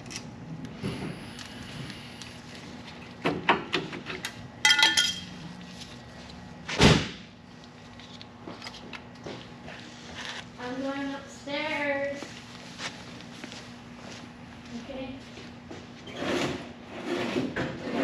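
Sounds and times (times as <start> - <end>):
loud heavy thump: 6.8 - 7.2.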